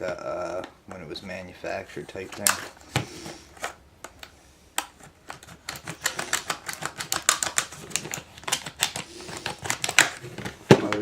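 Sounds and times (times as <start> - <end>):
plastic packaging crackling: 5.2 - 11.0.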